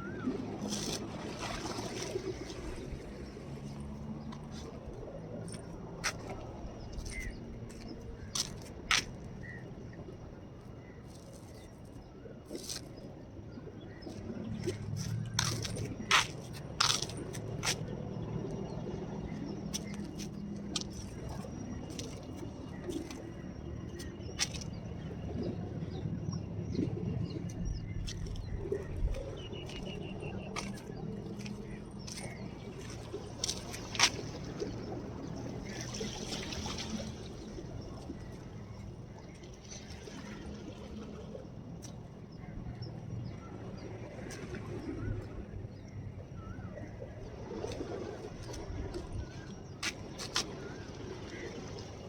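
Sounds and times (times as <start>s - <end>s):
seawater lapping on shore: 0.0s - 52.0s
steady low rumble: 2.2s - 35.8s.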